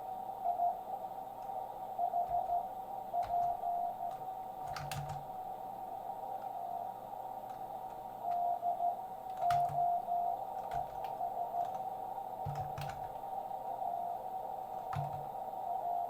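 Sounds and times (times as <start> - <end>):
radio band hiss: 0.0 - 16.0
morse code beep tone: 0.5 - 0.8, 2.0 - 4.2, 8.2 - 11.8, 13.8 - 14.2
sharp clicks: 9.3 - 9.9.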